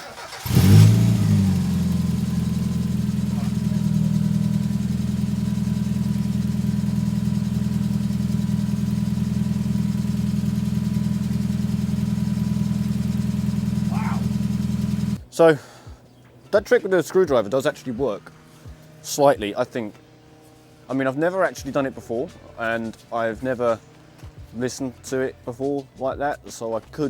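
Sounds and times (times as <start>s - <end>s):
car engine starting and idling: 0.0s - 15.2s.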